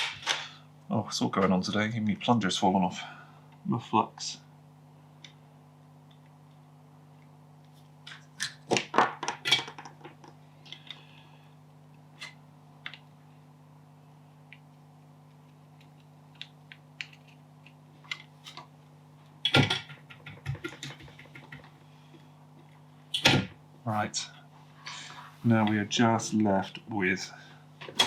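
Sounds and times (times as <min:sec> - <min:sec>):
hand tools clicking and tapping: 0:19.5 - 0:21.8.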